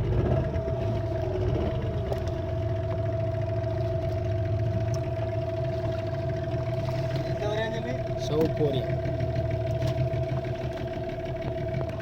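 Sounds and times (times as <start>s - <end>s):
boat engine rumbling: 0.0s - 12.0s
engine whine: 0.0s - 12.0s.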